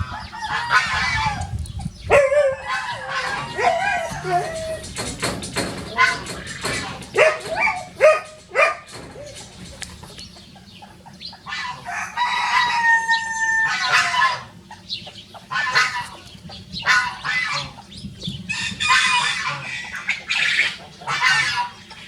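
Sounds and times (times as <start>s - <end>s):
rooster crowing: 0.0s - 1.5s, 2.1s - 4.8s, 11.6s - 14.5s
chicken clucking: 0.0s - 22.0s.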